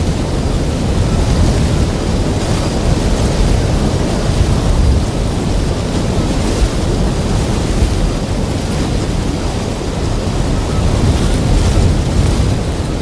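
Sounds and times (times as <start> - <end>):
loud wind noise: 0.0 - 13.0.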